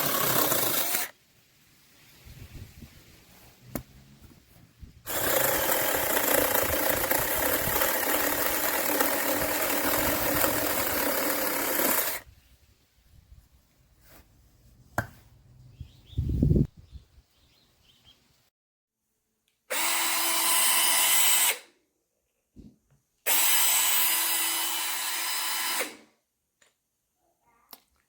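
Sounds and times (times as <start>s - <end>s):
electric chainsaw motor whining: 0.0s - 1.1s, 5.1s - 12.3s, 23.3s - 26.0s.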